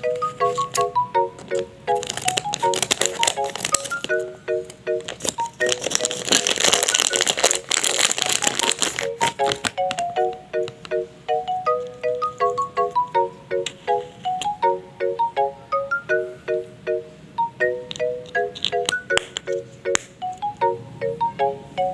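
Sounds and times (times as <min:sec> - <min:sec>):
plastic packaging crinkling: 0:00.0 - 0:10.2
light bouncy plucked music: 0:00.0 - 0:21.9.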